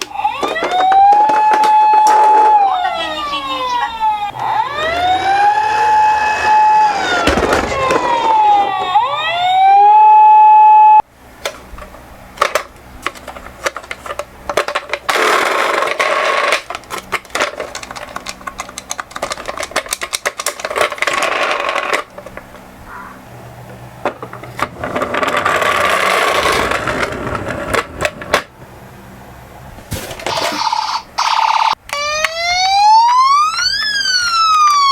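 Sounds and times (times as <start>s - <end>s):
toy cars rolling and rattling: 0.0s - 9.0s, 11.4s - 22.6s, 24.0s - 28.5s, 29.9s - 31.8s
loud steady siren tone: 0.0s - 11.1s, 30.6s - 34.9s.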